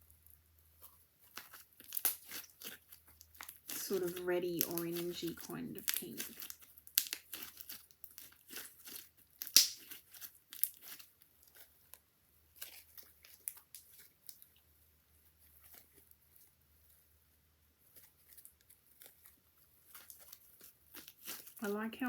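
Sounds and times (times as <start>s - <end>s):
slime crackling and popping: 0.2s - 14.6s, 17.8s - 22.0s
sharp slime snap: 1.8s - 2.8s, 3.6s - 11.0s.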